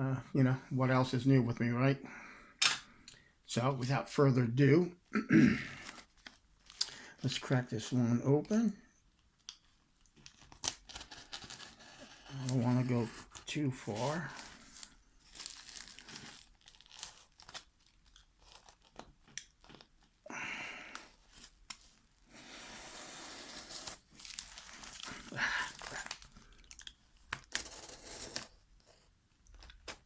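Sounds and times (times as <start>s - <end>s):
packaging tearing and crinkling: 10.2s - 19.9s, 23.1s - 26.6s.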